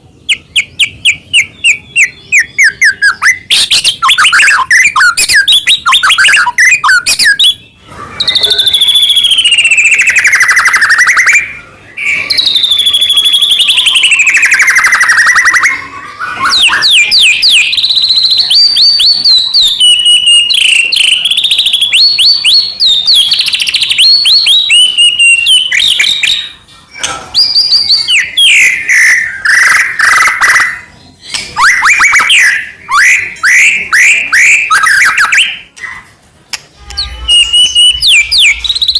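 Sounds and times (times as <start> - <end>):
songbird singing trilled whistles: 0.3 - 7.6, 8.2 - 26.5, 36.9 - 38.9.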